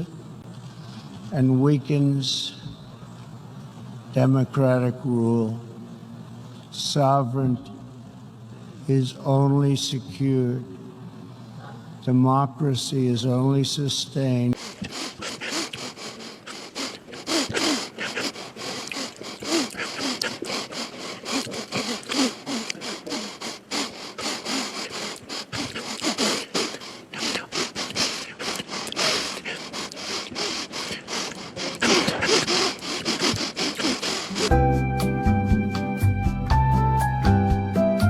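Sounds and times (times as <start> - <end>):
man sniffing: 14.6 - 34.6.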